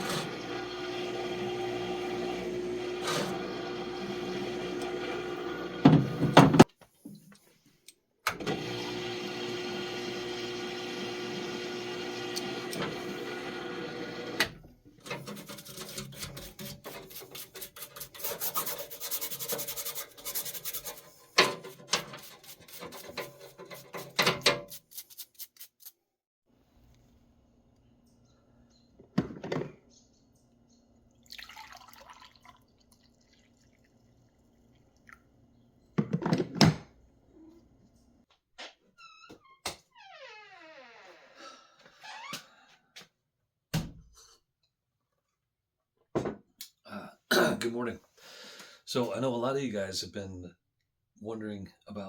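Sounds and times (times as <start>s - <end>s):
parts washer humming: 0.0s - 6.7s, 8.3s - 24.6s
scraping and scrubbing: 15.1s - 26.0s.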